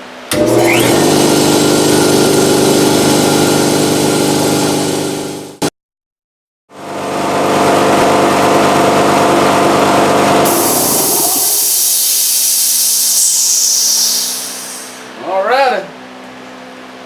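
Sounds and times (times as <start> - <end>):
air compressor running: 0.0 - 5.7, 6.8 - 15.1
motor winding down: 0.3 - 5.7, 7.9 - 15.1
loud hiss of air: 10.5 - 15.1.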